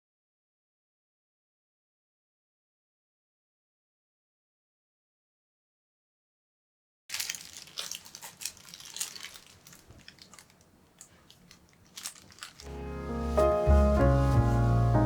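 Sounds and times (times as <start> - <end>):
light crinkling clicks: 7.1 - 15.0
piano music: 12.7 - 15.0.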